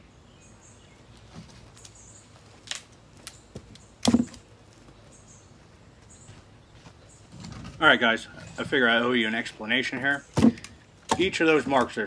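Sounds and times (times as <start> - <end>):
firewood knocking together: 3.5 - 4.4, 10.3 - 11.9.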